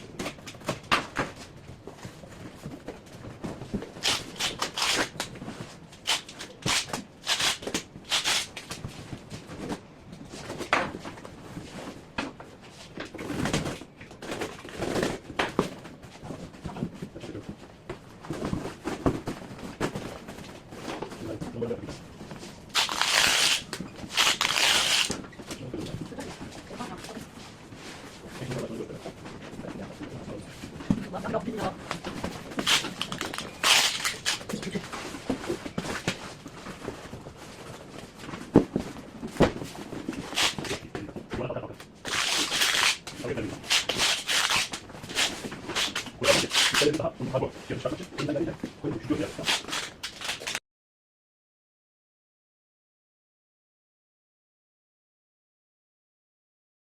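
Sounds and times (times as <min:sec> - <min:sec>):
packing rustling: 0:04.0 - 0:05.2, 0:22.8 - 0:25.2, 0:32.4 - 0:35.2, 0:40.2 - 0:40.8, 0:42.1 - 0:47.0, 0:49.3 - 0:50.6.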